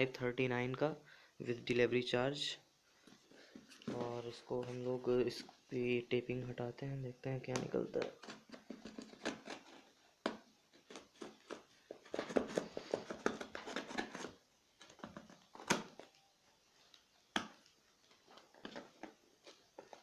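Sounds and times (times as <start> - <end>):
packaging crinkling and rustling: 7.6 - 20.0.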